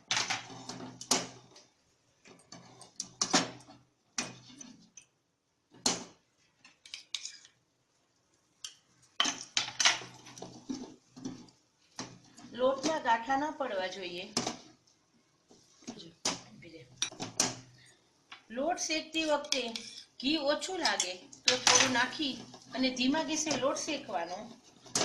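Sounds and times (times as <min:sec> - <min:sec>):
spoon scraping and knocking pan: 0:09.2 - 0:13.0, 0:19.2 - 0:25.0.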